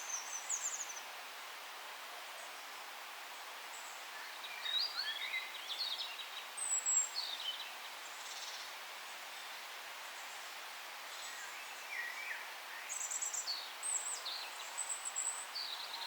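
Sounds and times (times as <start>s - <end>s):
steady forest hiss: 0.0s - 16.0s
songbirds chirping: 3.7s - 16.0s.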